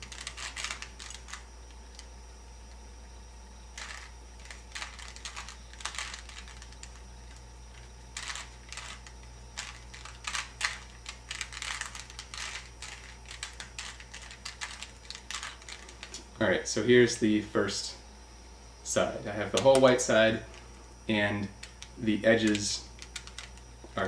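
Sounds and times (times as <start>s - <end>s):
puzzle cube plastic clicks: 0.0s - 2.1s, 3.8s - 16.2s, 21.4s - 23.6s.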